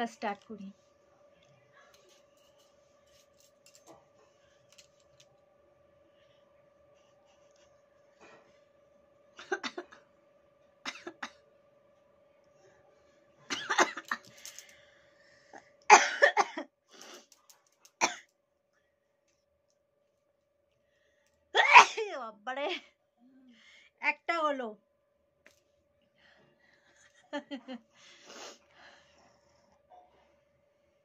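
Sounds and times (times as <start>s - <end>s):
faint steady hum: 0.0s - 31.0s
woman coughing: 9.4s - 10.0s, 10.9s - 11.4s, 13.5s - 14.2s, 15.9s - 16.6s, 18.0s - 18.2s, 21.6s - 22.3s.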